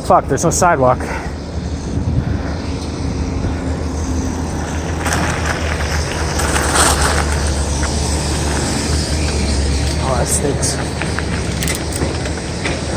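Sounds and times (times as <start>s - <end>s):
wind rumble on microphone: 0.0s - 12.9s
vehicle passing by: 1.2s - 12.9s.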